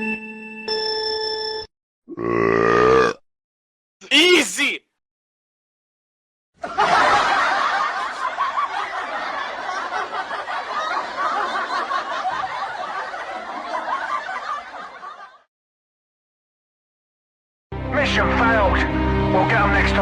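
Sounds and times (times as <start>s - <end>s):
crowd laughing: 6.6s - 15.5s.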